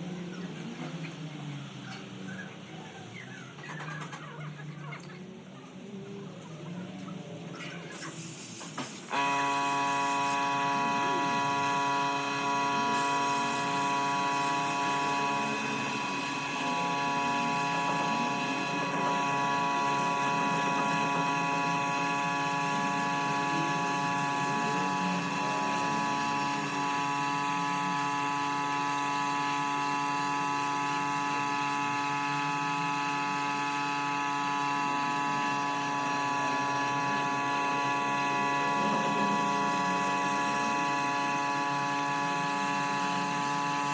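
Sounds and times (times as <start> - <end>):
power tool motor whining: 9.0 - 43.9.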